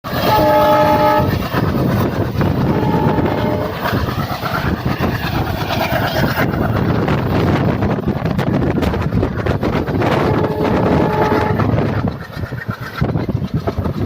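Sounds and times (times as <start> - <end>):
train wheels rumbling and clattering: 0.0 - 14.0
locomotive horn chord: 0.2 - 1.3, 2.7 - 3.8, 10.3 - 11.7.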